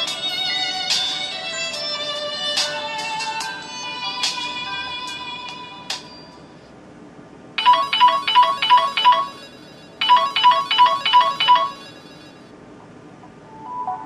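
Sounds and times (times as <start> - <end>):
trilling electronic ringtone: 7.6 - 12.5.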